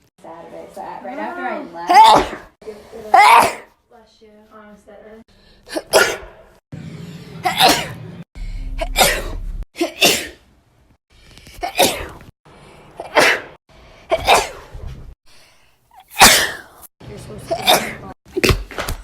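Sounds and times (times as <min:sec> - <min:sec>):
person sneezing: 0:03.2 - 0:03.7, 0:05.7 - 0:06.3, 0:07.4 - 0:08.0, 0:08.8 - 0:10.4, 0:11.6 - 0:12.2, 0:15.9 - 0:16.9.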